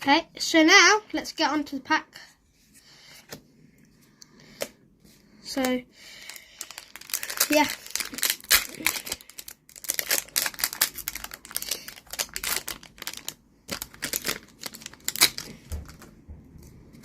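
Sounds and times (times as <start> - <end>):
foil wrapper crinkling and tearing: 5.6 - 16.1.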